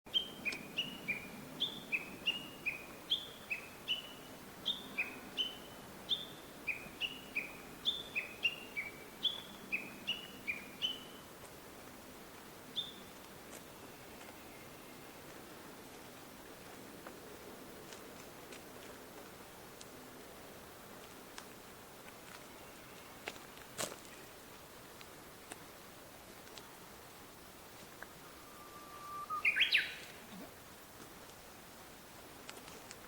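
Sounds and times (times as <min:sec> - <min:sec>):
bird chirping two-note calls: 0:28.3 - 0:30.0.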